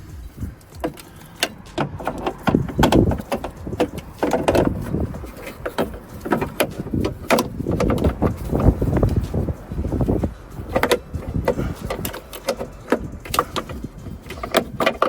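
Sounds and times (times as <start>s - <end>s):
car door strap clicking and rattling: 0.0s - 15.0s.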